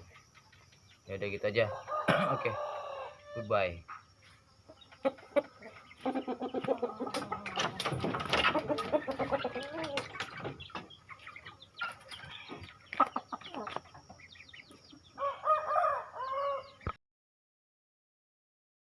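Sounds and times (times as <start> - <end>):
chickens clucking: 0.0 - 17.0
rooster crowing: 1.6 - 3.6, 15.1 - 16.8.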